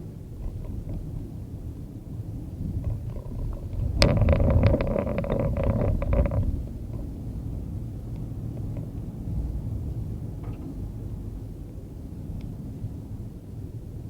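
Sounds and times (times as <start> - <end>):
rattling and ticking: 2.7 - 9.0.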